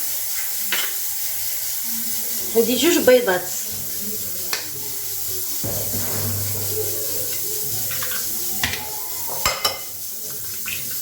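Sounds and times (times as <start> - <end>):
sharp knocks: 5.6 - 7.6.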